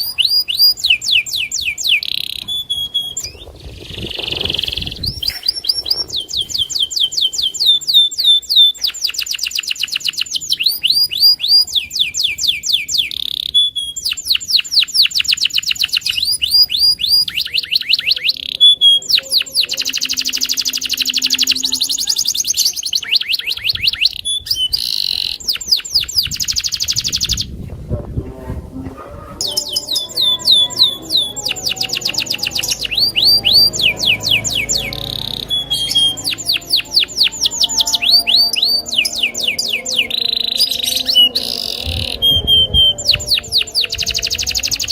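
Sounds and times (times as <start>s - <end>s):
canary singing trills: 0.0s - 27.6s, 28.8s - 44.9s
low rumble: 32.3s - 44.7s.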